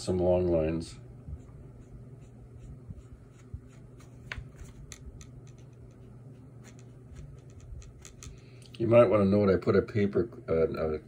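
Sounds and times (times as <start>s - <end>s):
brush pen scratching on paper: 1.4s - 8.3s.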